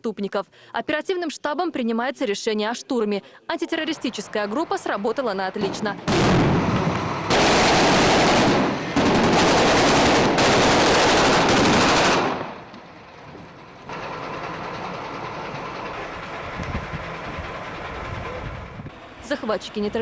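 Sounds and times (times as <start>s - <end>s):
automatic weapons fire: 6.1s - 12.7s.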